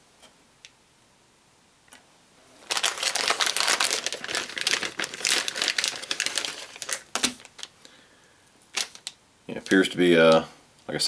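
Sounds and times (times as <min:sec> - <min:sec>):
plastic packaging crinkling: 0:02.6 - 0:08.0, 0:08.7 - 0:10.4.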